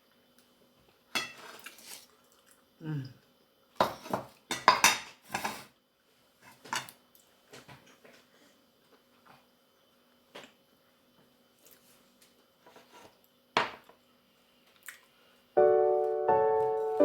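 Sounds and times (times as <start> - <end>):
quiet eating sounds: 0.0 - 4.5, 5.4 - 15.6
keyboard music with held chords: 15.6 - 17.0.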